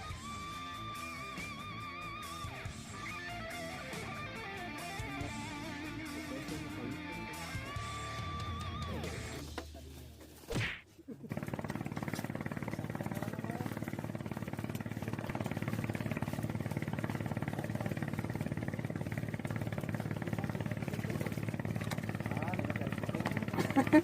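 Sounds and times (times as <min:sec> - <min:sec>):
engine running with rapid pulse: 0:00.0 - 0:09.6, 0:10.6 - 0:24.0
short swish: 0:10.5 - 0:10.8.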